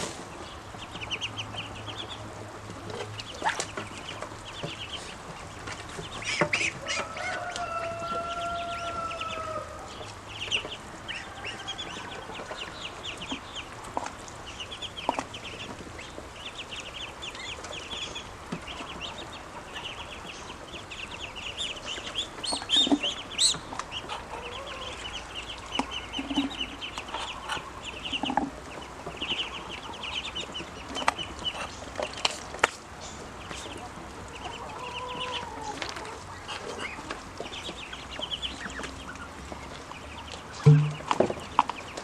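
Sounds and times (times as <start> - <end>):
ducklings peeping: 0.0 - 42.0.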